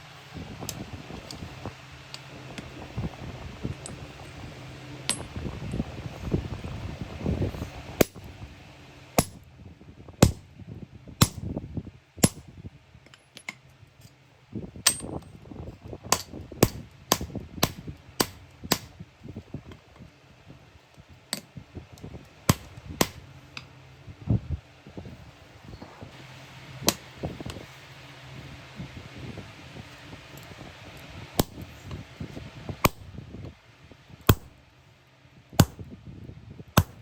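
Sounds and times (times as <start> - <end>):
hammer striking metal: 9.2 - 9.4, 11.2 - 11.4, 12.2 - 12.4, 22.5 - 23.2, 36.8 - 37.0.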